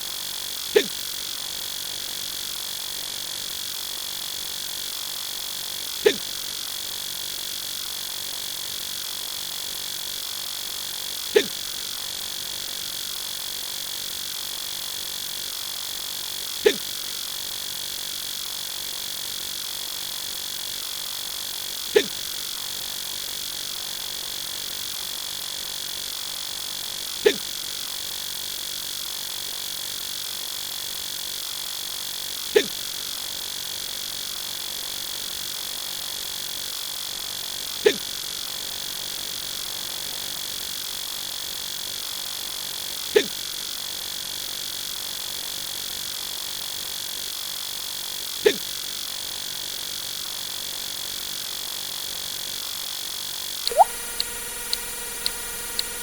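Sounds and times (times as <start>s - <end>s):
man hiccuping: 0.8s - 1.0s, 6.1s - 6.3s, 11.4s - 11.6s, 22.0s - 22.2s, 32.6s - 32.8s.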